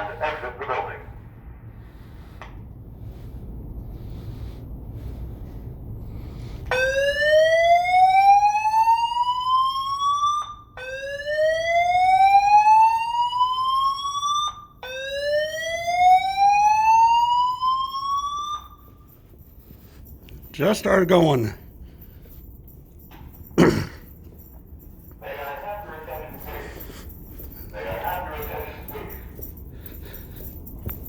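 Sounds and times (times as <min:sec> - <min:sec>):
fire alarm rising sweeps: 0:06.6 - 0:23.0.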